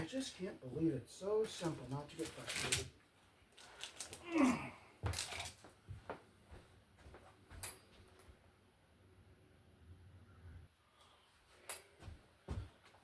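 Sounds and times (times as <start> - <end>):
small hard items clinking: 3.5 - 4.4, 5.0 - 5.7.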